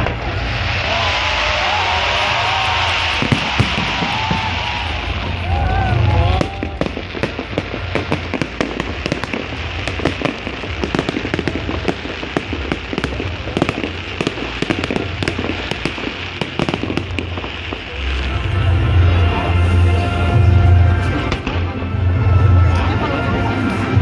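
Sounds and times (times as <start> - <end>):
fireworks crackling: 0.0 - 24.0.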